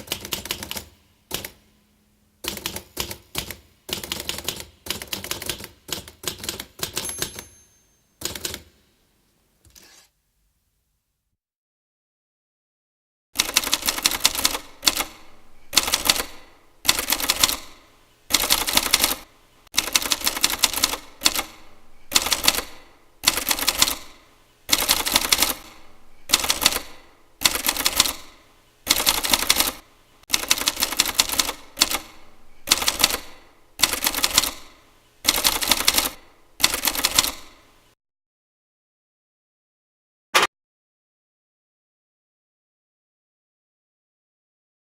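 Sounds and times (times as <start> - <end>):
typewriter keys clacking: 0.0 - 1.6, 2.5 - 7.6, 8.2 - 8.8, 13.4 - 19.2, 19.8 - 37.6.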